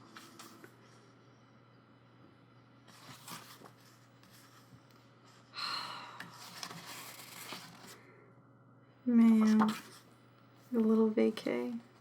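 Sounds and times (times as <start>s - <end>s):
paper page rustling: 2.9s - 4.8s, 6.4s - 8.0s, 9.4s - 10.1s.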